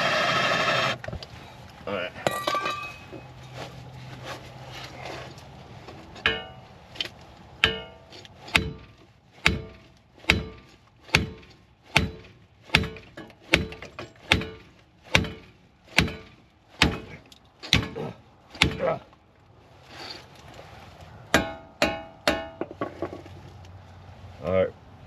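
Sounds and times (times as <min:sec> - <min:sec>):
hammer striking steel: 0:06.2 - 0:06.6, 0:07.6 - 0:18.0, 0:21.3 - 0:22.8.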